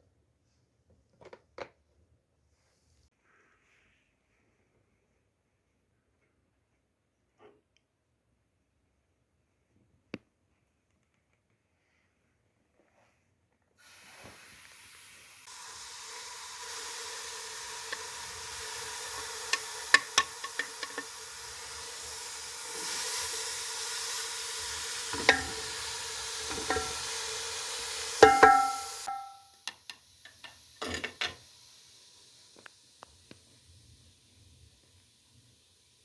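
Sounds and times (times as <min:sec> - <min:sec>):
food sizzling in a hot pan: 0:13.8 - 0:36.0
metal utensil clinking against pan: 0:25.2 - 0:25.6, 0:26.5 - 0:27.0, 0:28.2 - 0:29.4.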